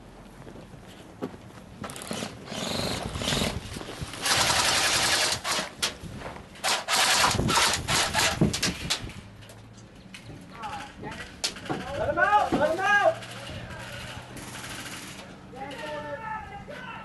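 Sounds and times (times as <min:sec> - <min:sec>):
airsoft guns firing bursts: 0:04.2 - 0:05.7, 0:06.6 - 0:08.4, 0:11.6 - 0:15.2.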